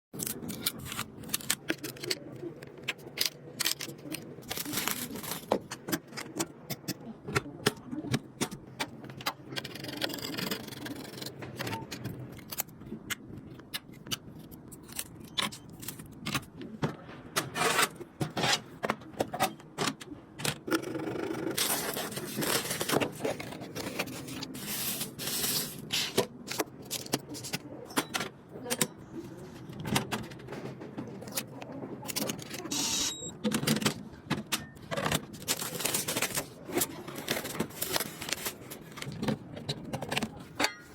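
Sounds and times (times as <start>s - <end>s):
scraping and rustling: 21.5s - 27.5s.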